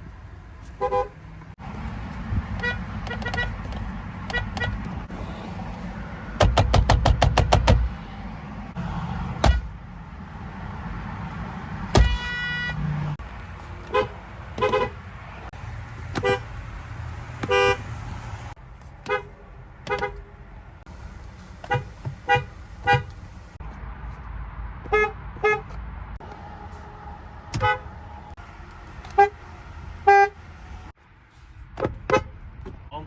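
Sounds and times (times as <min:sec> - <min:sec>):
car horn toots: 0:00.8 - 0:01.2, 0:02.6 - 0:03.6, 0:04.2 - 0:04.9, 0:09.4 - 0:09.7, 0:11.9 - 0:12.9, 0:13.8 - 0:15.0, 0:16.1 - 0:16.5, 0:17.4 - 0:17.9, 0:19.0 - 0:20.3, 0:21.6 - 0:23.1, 0:24.9 - 0:25.8, 0:27.5 - 0:27.9, 0:29.1 - 0:29.4, 0:30.0 - 0:30.4.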